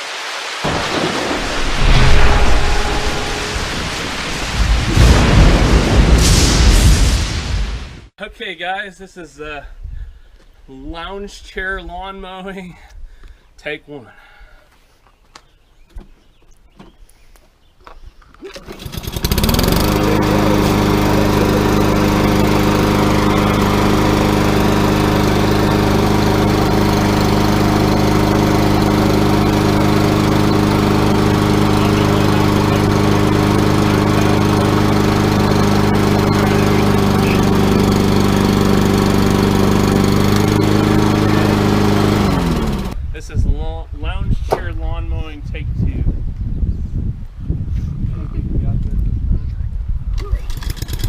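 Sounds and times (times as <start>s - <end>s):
lawn mower engine running: 18.6s - 43.0s, 50.4s - 51.0s.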